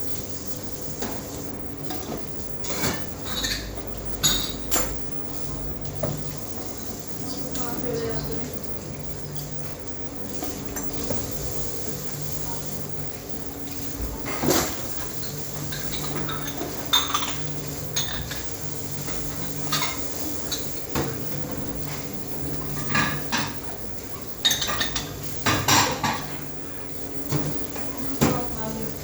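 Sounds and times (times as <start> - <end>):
steady low hum: 0.0 - 29.0
dishes and cutlery clattering: 1.9 - 5.0, 24.4 - 26.4.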